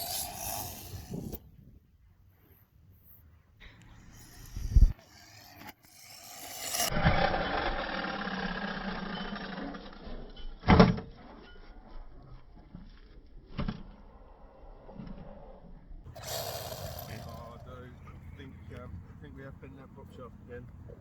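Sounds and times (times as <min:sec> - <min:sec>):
electric rc car motor whining: 0:00.0 - 0:01.4, 0:03.8 - 0:10.3, 0:16.1 - 0:17.9.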